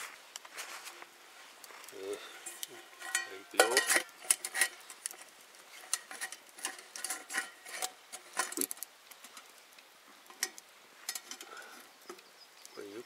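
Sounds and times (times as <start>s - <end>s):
utensil scraping cooking pot: 2.2s - 9.4s.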